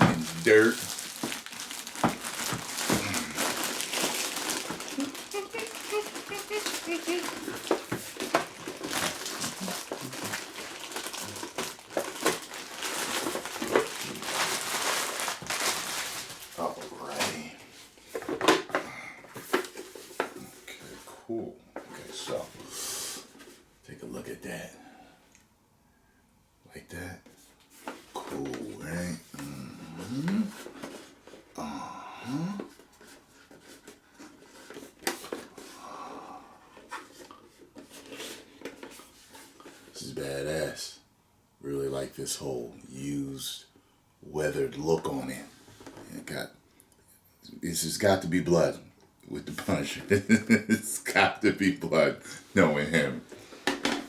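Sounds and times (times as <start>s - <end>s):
packaging crinkling and rustling: 0.0s - 18.8s, 32.7s - 35.7s, 36.8s - 40.0s.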